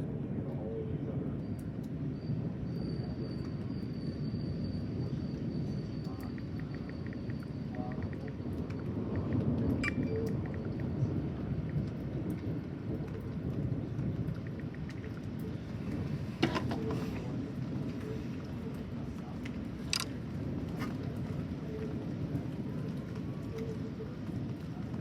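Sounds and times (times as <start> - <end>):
rain falling: 6.2 - 16.4, 17.0 - 25.0
rolling thunder: 8.4 - 16.4.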